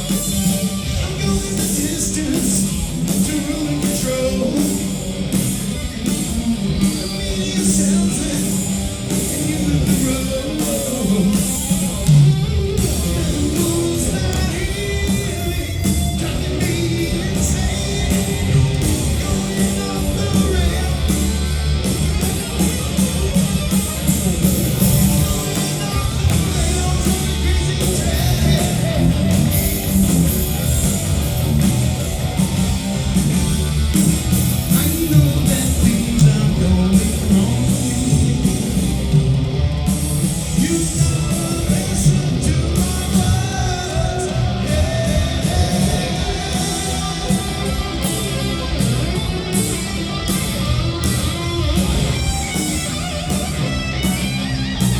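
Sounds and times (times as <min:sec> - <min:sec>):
live rock band playing: 0:00.0 - 0:54.9
person singing: 0:12.8 - 0:21.6, 0:25.1 - 0:29.8, 0:34.7 - 0:38.9, 0:40.4 - 0:48.8.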